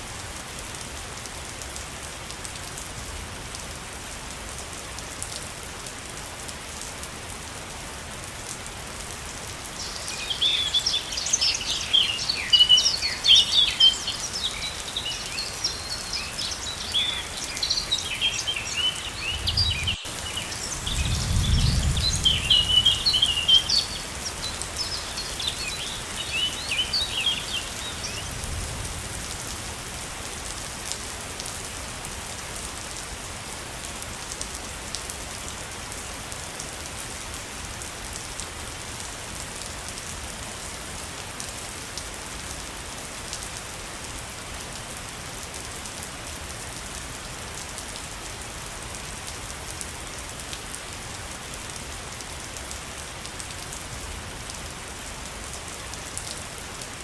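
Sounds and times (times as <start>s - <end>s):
small birds chirping: 9.6s - 28.7s
waterfall rushing: 9.7s - 21.2s, 22.0s - 28.3s.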